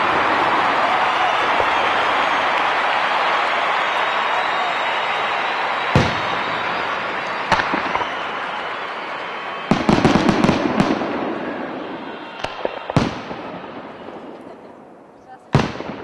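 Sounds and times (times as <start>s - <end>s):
firework bangs: 0.0s - 16.0s
crackling firework pops: 7.3s - 8.6s, 12.4s - 14.6s.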